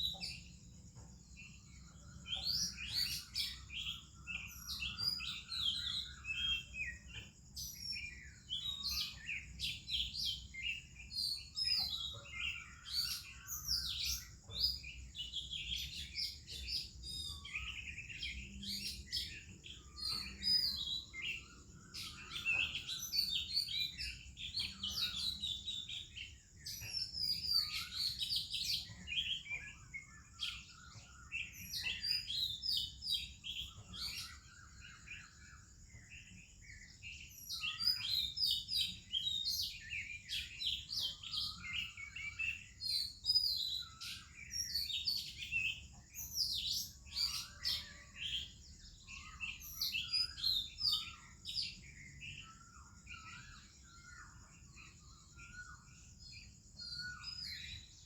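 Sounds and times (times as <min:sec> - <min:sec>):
birds singing: 0:00.0 - 0:58.0.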